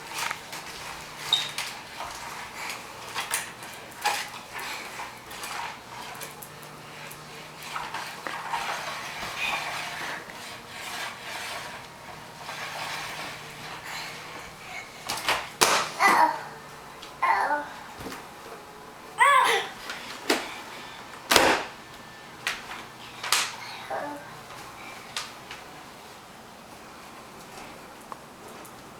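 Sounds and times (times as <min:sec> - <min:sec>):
vacuum cleaner knocking and clattering: 0:15.0 - 0:16.4, 0:21.2 - 0:21.8.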